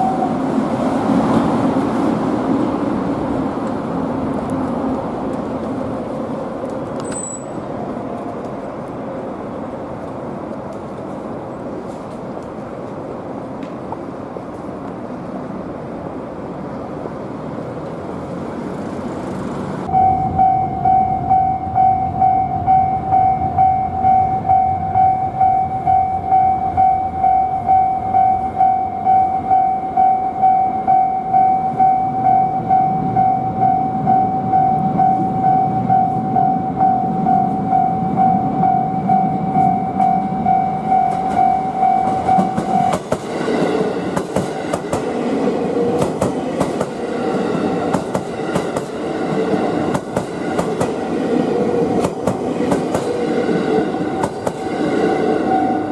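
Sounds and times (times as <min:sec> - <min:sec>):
train rumble: 0:00.0 - 0:55.9
level-crossing electronic bell: 0:19.9 - 0:43.0, 0:55.4 - 0:55.9
train wheels clattering over rail joints: 0:41.1 - 0:45.2, 0:45.9 - 0:47.2, 0:47.8 - 0:51.1.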